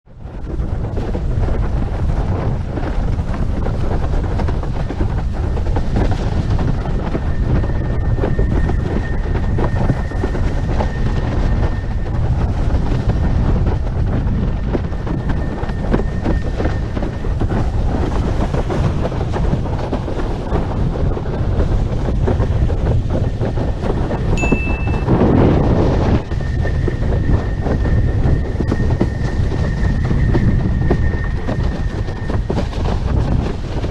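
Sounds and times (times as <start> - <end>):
wind buffeting microphone: 0.1 - 33.9
water rushing under board: 0.2 - 33.9
thin high whistle: 24.4 - 25.2.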